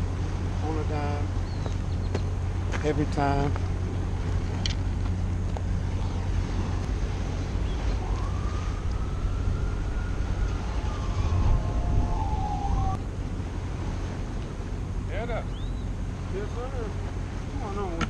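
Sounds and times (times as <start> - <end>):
wind rumbling on microphone: 0.0 - 18.0
distant siren wailing: 7.0 - 13.0.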